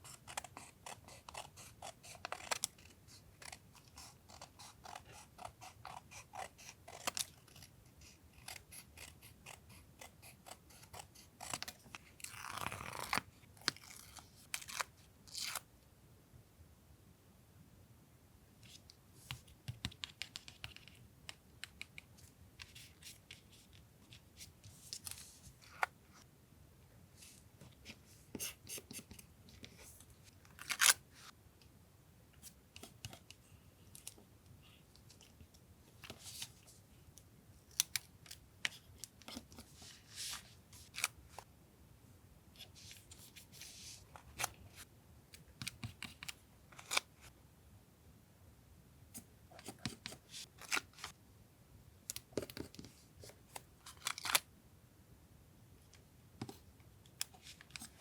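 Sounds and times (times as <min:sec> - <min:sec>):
scissors snipping paper: 0:00.1 - 0:07.7.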